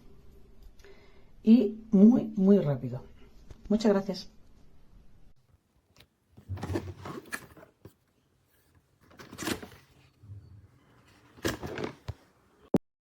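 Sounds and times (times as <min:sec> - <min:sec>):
rustling handling noise: 0:06.4 - 0:10.2, 0:10.9 - 0:12.4.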